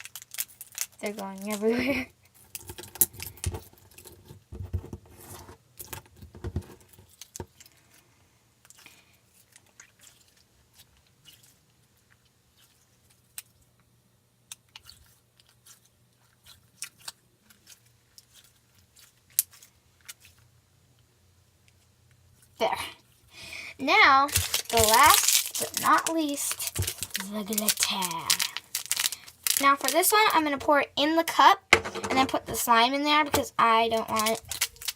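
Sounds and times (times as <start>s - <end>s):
slime squishing: 8.6s - 13.7s, 14.5s - 20.5s, 23.8s - 31.5s, 32.1s - 34.9s.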